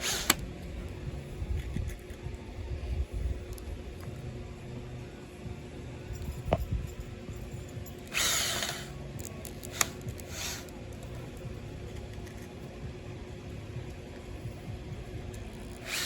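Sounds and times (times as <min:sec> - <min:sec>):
electric drill running: 0:00.0 - 0:00.5, 0:08.0 - 0:10.7, 0:15.2 - 0:16.0.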